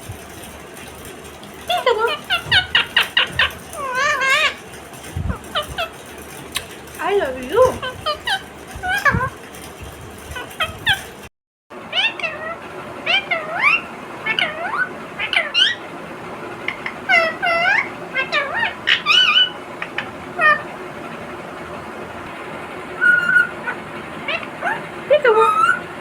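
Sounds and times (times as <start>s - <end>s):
parrot squawks and chirps: 1.7s - 6.7s, 7.6s - 9.4s, 10.3s - 11.1s, 11.9s - 15.9s, 16.7s - 20.7s, 23.0s - 25.9s
parrot whistle: 16.8s - 19.6s, 23.0s - 24.8s, 25.4s - 25.9s.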